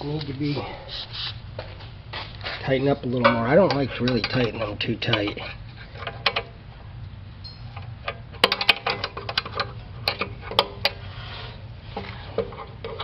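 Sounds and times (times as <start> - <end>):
steady low hum: 0.0 - 13.0
metal tools clinking: 2.7 - 6.4.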